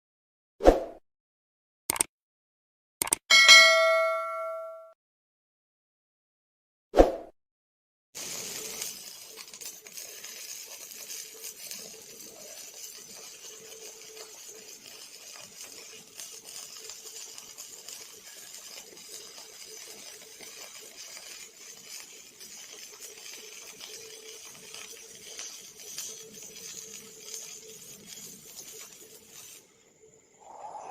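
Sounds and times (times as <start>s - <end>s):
welding arc crackling: 8.2s - 29.7s.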